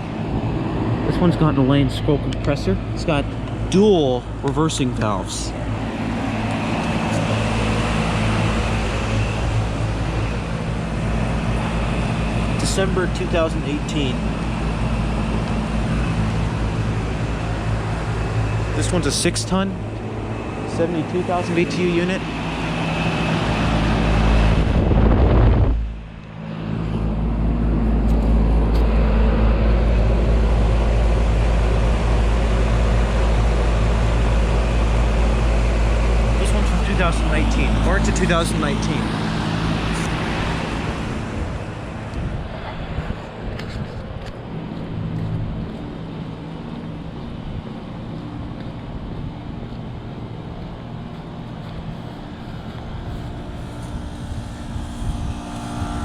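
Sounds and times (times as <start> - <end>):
deep rumble: 0.0 - 56.0
fans rushing: 0.0 - 56.0
machine hum: 0.0 - 56.0
faint high whine: 50.0 - 56.0.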